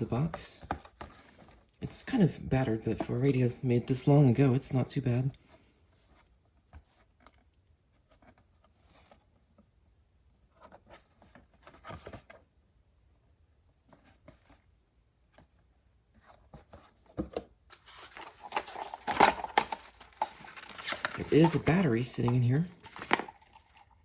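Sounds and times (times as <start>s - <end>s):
handling rustles: 10.5s - 12.5s, 13.8s - 24.0s.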